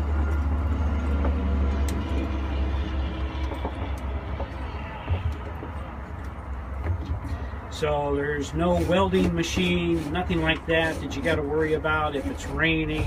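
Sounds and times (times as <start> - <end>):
low rumble: 0.0 - 8.1.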